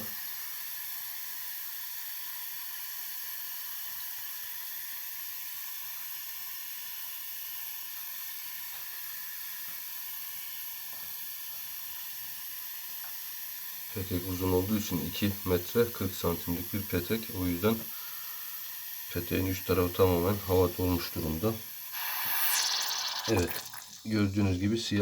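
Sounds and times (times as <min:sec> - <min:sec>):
air hissing from radiator valve: 0:00.0 - 0:25.0.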